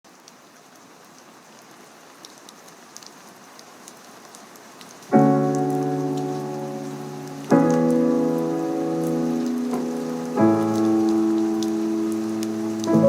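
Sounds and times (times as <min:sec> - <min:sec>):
steady rain: 0:00.0 - 0:13.0
piano chord ringing: 0:05.2 - 0:13.0.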